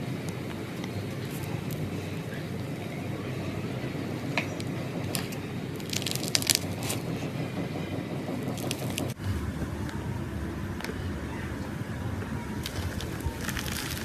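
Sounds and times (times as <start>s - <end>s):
low background noise: 0.0s - 14.0s
crackling pops and clicks: 4.4s - 9.2s
slime squeezed by hand: 5.8s - 7.0s.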